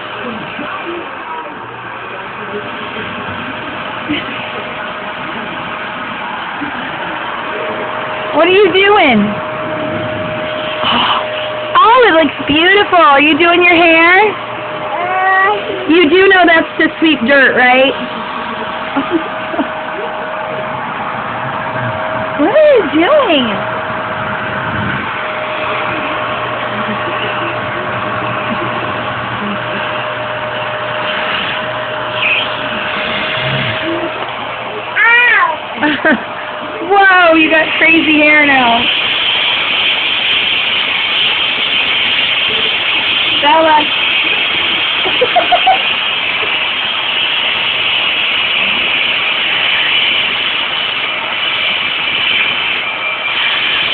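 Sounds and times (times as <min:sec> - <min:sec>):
vacuum cleaner motor running: 0:00.0 - 0:53.9.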